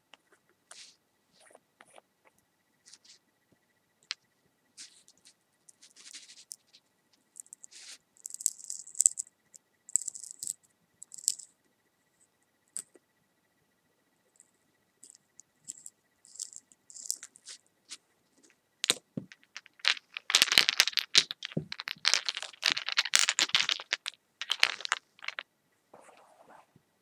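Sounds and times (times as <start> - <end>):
small objects crackling and scraping: 4.8 - 6.8, 7.4 - 9.3, 9.9 - 11.5, 15.0 - 26.6.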